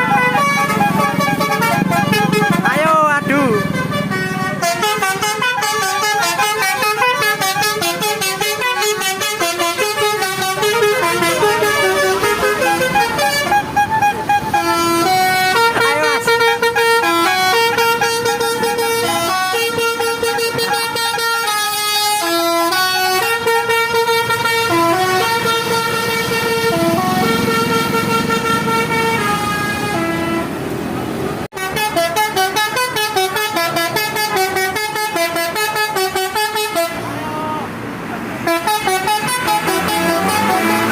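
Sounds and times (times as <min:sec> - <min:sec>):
multi-tone musical horn playing: 0:00.0 - 0:30.6, 0:31.5 - 0:37.6, 0:38.4 - 0:40.9.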